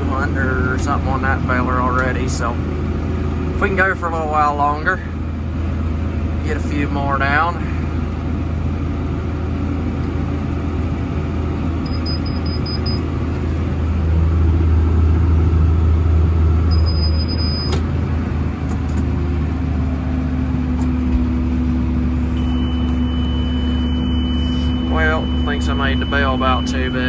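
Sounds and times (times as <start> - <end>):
tractor engine running: 0.0 - 27.0
high electronic beeps: 11.8 - 13.0, 16.7 - 17.8, 22.4 - 27.0.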